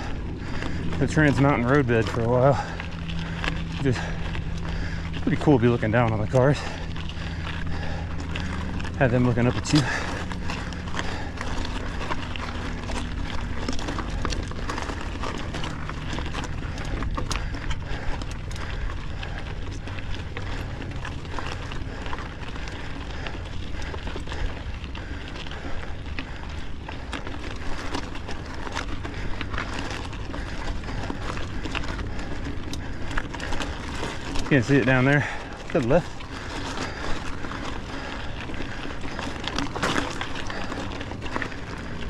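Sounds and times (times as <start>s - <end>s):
trail and wind rumble: 0.0s - 42.0s.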